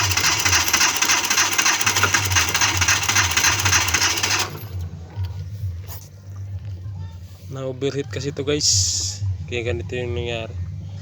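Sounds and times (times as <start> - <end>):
car engine cranking: 0.0 - 5.0.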